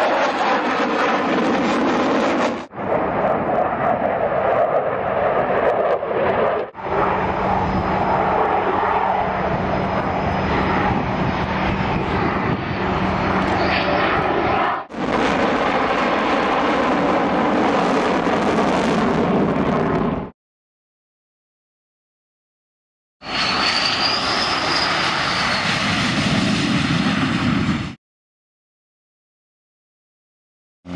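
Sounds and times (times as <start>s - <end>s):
loud aircraft engine: 0.0s - 20.3s, 23.2s - 28.0s.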